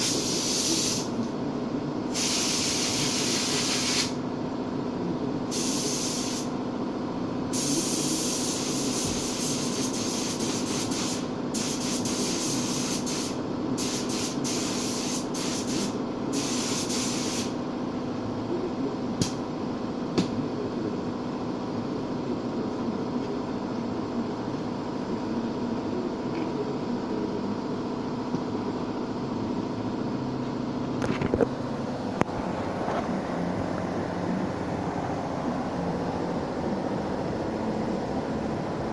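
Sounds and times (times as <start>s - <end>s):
paint spray gun hissing: 0.0s - 1.1s, 2.2s - 4.2s, 5.5s - 6.5s, 7.6s - 17.5s
steady mechanical hum: 0.0s - 38.9s.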